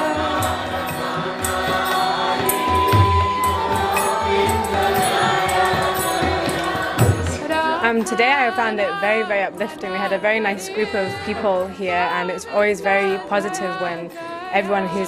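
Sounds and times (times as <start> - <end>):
steady drone: 0.0 - 8.0
bright clicking percussion: 0.0 - 8.5
group chanting: 0.0 - 15.0.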